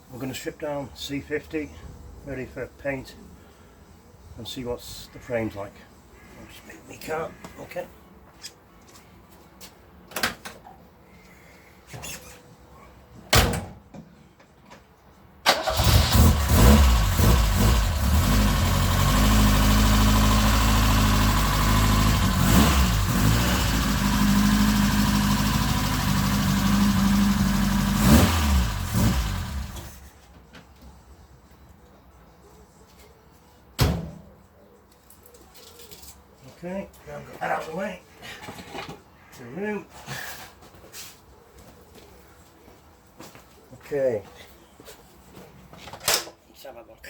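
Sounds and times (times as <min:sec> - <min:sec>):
car engine starting and idling: 0:15.4 - 0:30.1.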